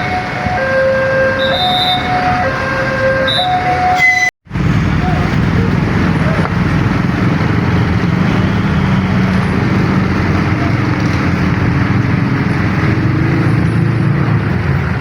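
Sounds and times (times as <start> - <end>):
road noise: 0.0 - 15.0
vehicle engine droning: 0.0 - 15.0.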